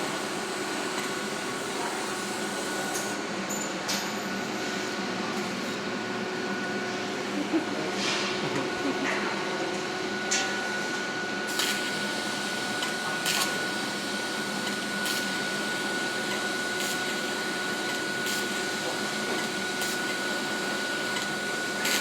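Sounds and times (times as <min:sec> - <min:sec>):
welding arc hissing: 0:11.5 - 0:22.0
welding crackles: 0:11.5 - 0:22.0.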